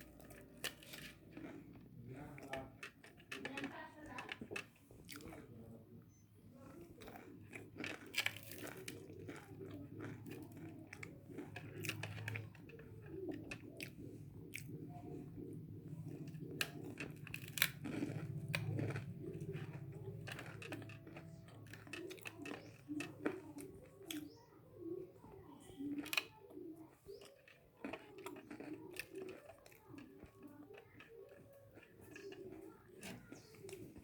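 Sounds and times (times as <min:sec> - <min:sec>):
crunchy chewing: 0:00.0 - 0:34.0
steady low hum: 0:10.8 - 0:24.7.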